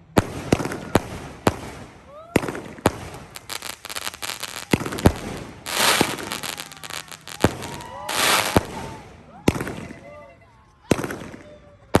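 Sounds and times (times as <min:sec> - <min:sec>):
firework sharp bangs: 0:00.0 - 0:09.9
firework crackling: 0:00.0 - 0:10.0
hissing crackle bursts: 0:03.1 - 0:08.8.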